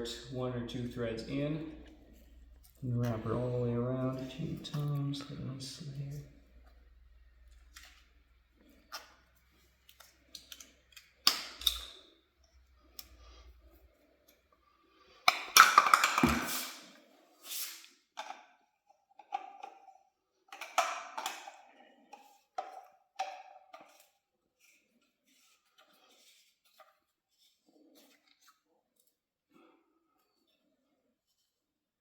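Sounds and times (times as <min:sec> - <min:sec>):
plastic fittings clicking and rustling: 0:09.8 - 0:13.4, 0:19.2 - 0:29.2.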